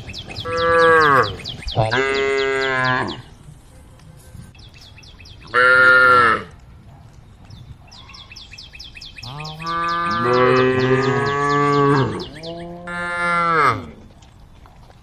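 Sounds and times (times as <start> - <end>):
bird chirping rapidly: 0.0 - 2.9, 7.9 - 12.6
cows mooing: 0.4 - 3.3, 5.5 - 6.6, 9.2 - 14.1.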